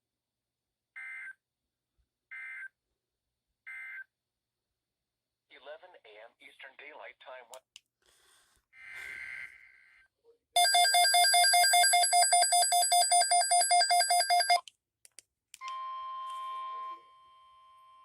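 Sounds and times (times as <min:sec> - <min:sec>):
steady alarm tone: 0:10.6 - 0:14.6.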